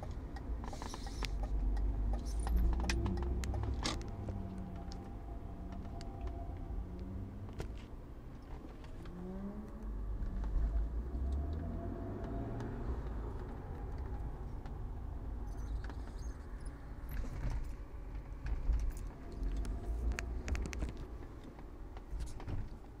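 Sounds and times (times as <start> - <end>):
car engine rumble: 0.0 - 23.0
road noise: 0.0 - 23.0
sharp clicks and rattles: 17.1 - 22.9.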